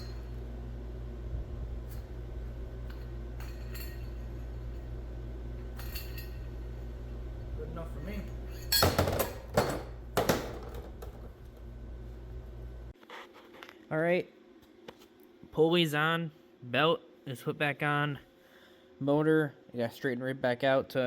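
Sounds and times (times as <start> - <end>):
steady low hum: 0.0 - 13.0
metal tools clinking: 2.8 - 4.9, 5.7 - 6.7, 8.0 - 9.9
loud metal clanks with rattle: 8.5 - 10.9.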